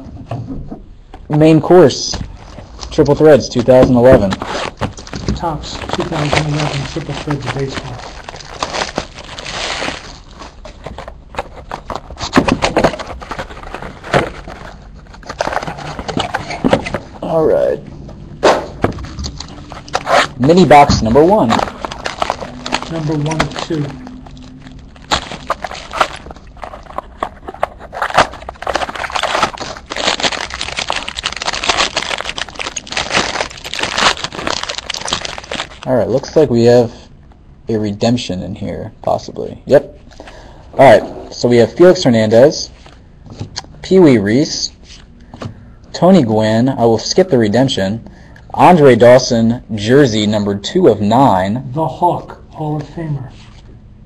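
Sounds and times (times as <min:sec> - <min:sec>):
wrapping rustling: 0:02.3 - 0:17.7, 0:18.8 - 0:36.4.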